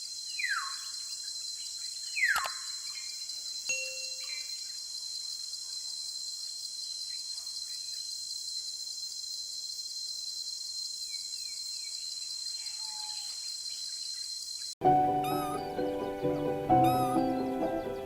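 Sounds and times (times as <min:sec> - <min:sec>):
insect chorus: 0:00.0 - 0:14.8
bird chirps: 0:00.3 - 0:05.9, 0:11.0 - 0:18.0.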